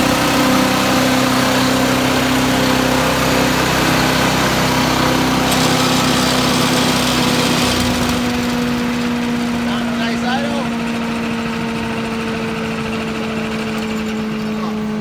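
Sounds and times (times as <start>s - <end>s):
small engine running steadily: 0.0s - 15.0s.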